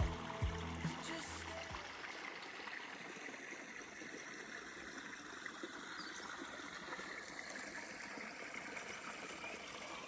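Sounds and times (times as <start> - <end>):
creek water flowing: 0.0 - 10.0.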